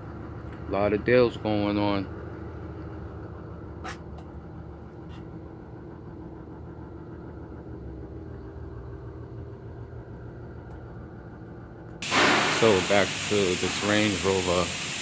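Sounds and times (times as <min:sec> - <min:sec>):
engine idling: 0:12.0 - 0:15.0.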